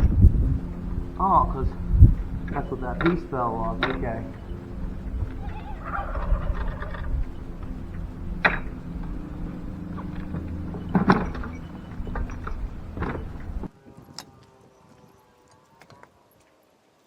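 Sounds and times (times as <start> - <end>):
steady low hum: 0.0 - 13.7
turkey gobbling: 0.6 - 13.7
sharp knocks: 6.6 - 13.7.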